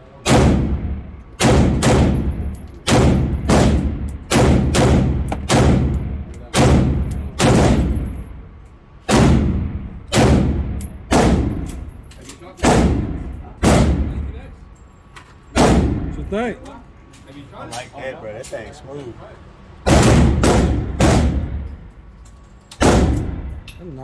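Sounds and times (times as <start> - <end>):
rifle gunshots with echo: 1.4 - 8.1.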